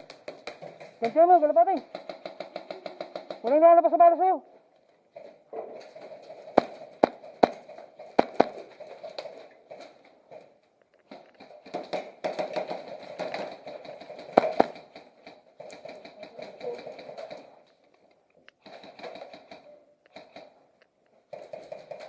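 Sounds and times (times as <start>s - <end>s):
airsoft gun shots: 8.2s - 8.6s, 14.4s - 14.8s.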